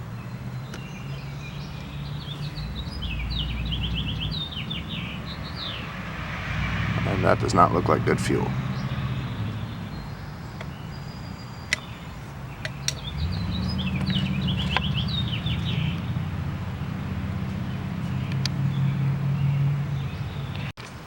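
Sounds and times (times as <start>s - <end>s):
bird chirping high notes: 1.0s - 16.3s
steady low drone: 1.6s - 10.2s.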